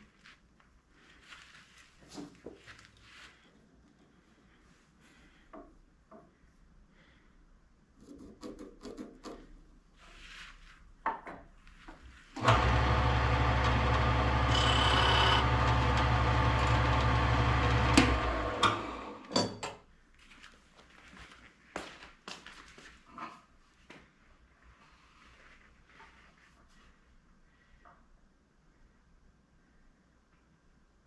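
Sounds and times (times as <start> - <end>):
electric power tool cutting wood: 12.4 - 19.3.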